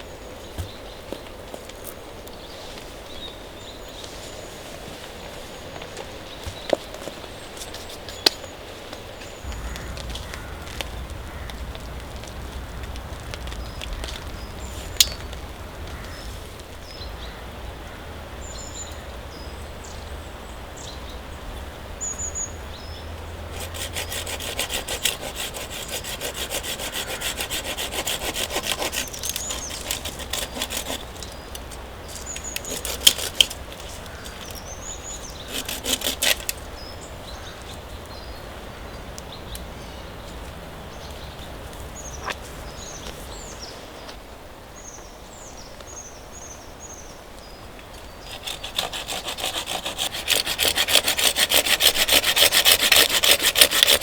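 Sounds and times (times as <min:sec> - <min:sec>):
hand saw cutting wood: 0:23.5 - 0:36.6, 0:48.2 - 0:54.0.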